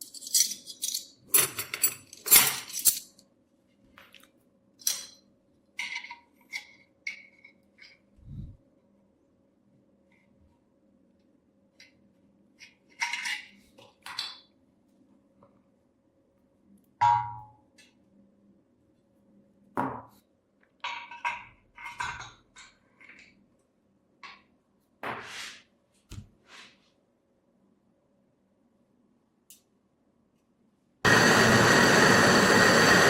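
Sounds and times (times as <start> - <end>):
metal parts clinking and scraping: 0.0 - 3.2, 12.6 - 14.4
faint steady hum: 0.0 - 25.0.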